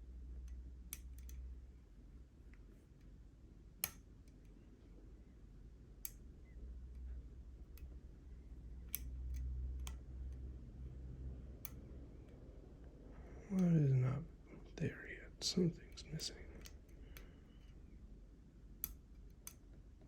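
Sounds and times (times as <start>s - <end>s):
steady low hum: 0.0s - 20.0s
lock pick clicks: 8.8s - 10.0s.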